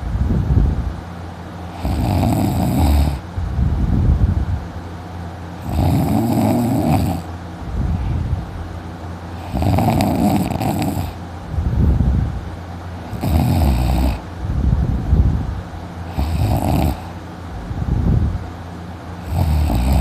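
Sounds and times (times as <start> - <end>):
man snoring loudly: 1.7 - 3.2, 5.6 - 7.3, 9.4 - 11.2, 13.1 - 14.2, 16.1 - 17.2, 19.2 - 20.0
soft breathing: 7.0 - 8.4.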